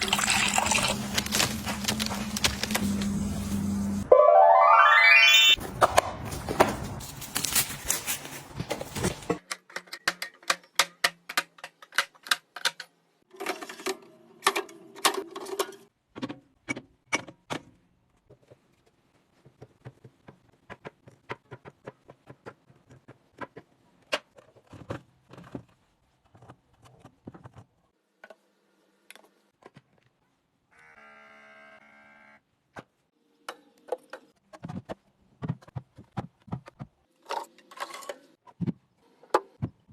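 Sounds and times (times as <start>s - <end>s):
household items clicking and knocking: 0.0s - 3.2s.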